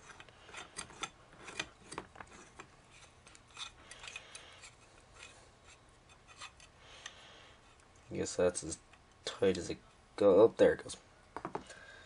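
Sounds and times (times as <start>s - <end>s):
metal parts clicking and scraping: 0.0s - 6.7s.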